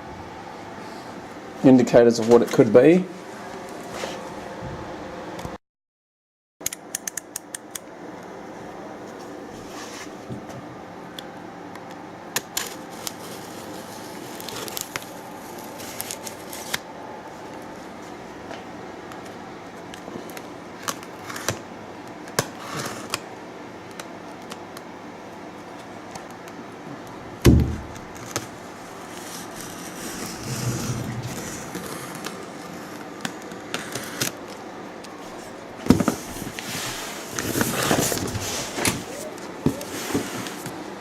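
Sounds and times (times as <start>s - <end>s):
knocks on cardboard box: 27.4s - 27.9s
heavy thump: 27.4s - 28.0s, 30.2s - 32.4s.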